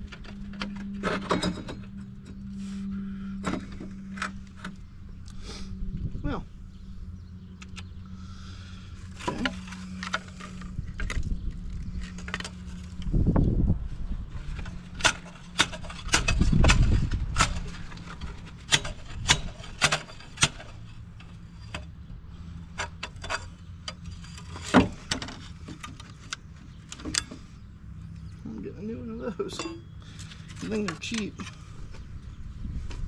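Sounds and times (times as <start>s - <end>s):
low rumbling thuds: 13.0s - 19.7s
metal tools clinking: 29.5s - 31.7s.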